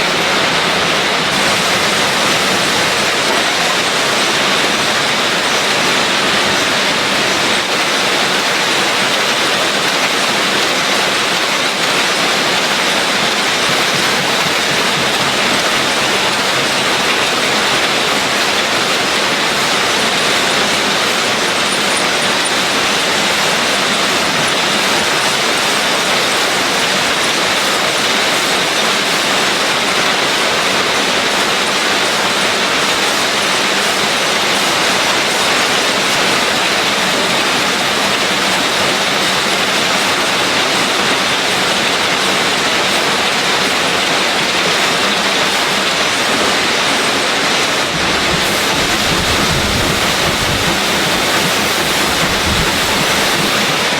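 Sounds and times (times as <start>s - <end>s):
machinery hissing: 0.0s - 25.3s, 47.2s - 53.9s.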